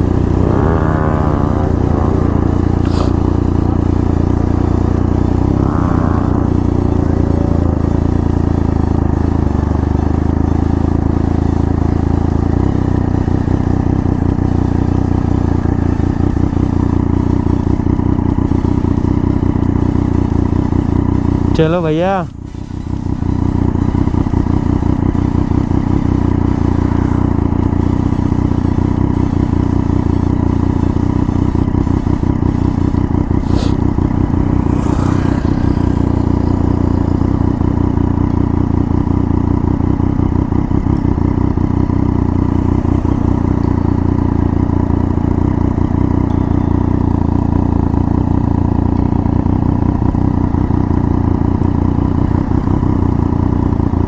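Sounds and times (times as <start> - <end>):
motorcycle engine rumbling: 0.0 - 54.0.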